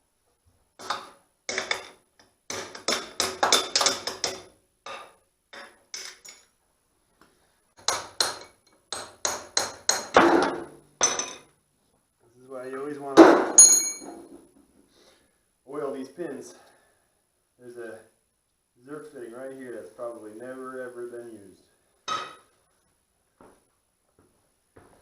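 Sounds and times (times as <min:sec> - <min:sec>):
hammer striking steel: 0:22.1 - 0:22.5.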